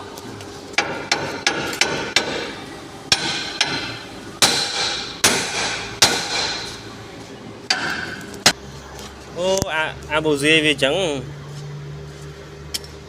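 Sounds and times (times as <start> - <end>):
hammer striking metal: 0.8 - 6.8, 7.7 - 8.6.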